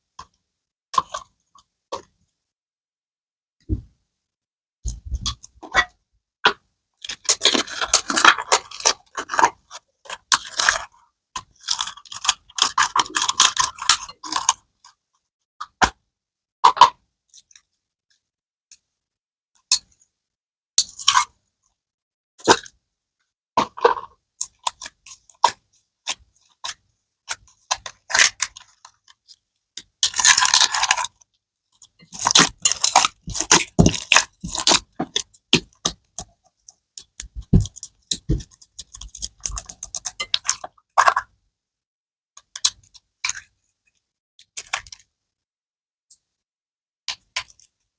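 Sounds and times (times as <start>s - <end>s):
slime squishing with crackling pops: 32.0s - 40.6s.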